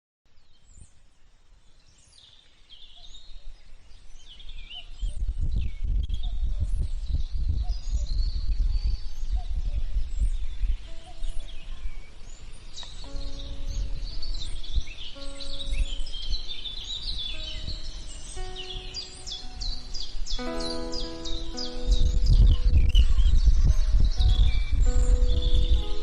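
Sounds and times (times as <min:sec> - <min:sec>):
birds chirping and whistling: 0:02.7 - 0:26.0
low rumble: 0:21.8 - 0:26.0.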